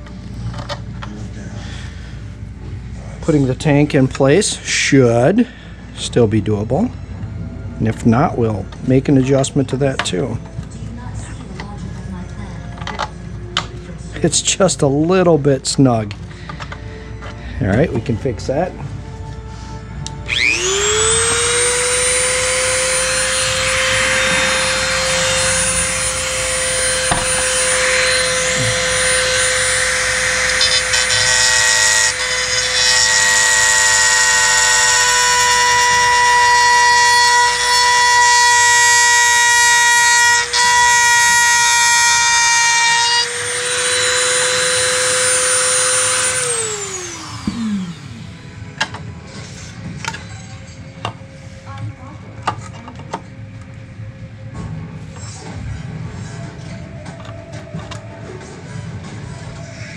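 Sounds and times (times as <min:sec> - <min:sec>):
rotary tool grinding plastic: 0:20.3 - 0:48.2.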